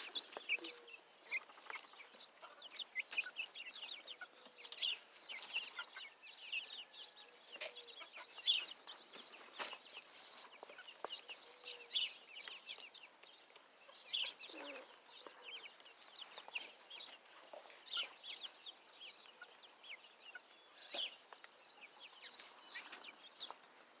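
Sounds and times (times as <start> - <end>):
baby chicks peeping: 0.0 - 24.0.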